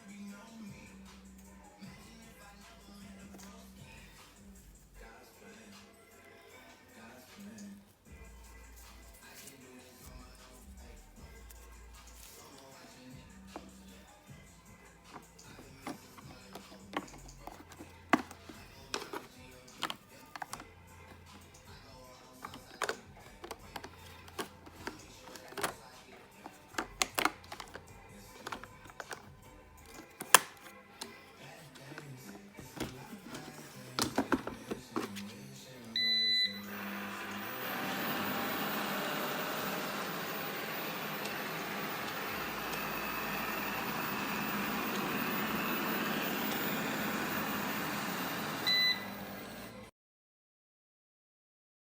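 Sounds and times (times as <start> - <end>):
plastic parts clicking and knocking: 15.1 - 21.6, 22.4 - 35.3
robot vacuum whirring: 36.0 - 49.9.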